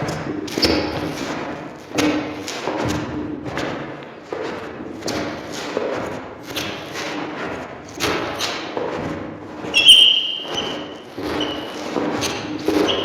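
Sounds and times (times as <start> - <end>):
hard shoes on wooden floor: 8.0 - 13.0
sharp high squeak of step: 9.7 - 13.0.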